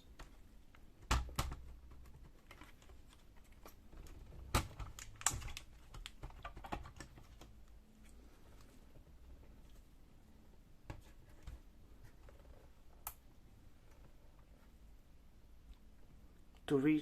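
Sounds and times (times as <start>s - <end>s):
plastic clicks and knocks: 3.9s - 7.5s.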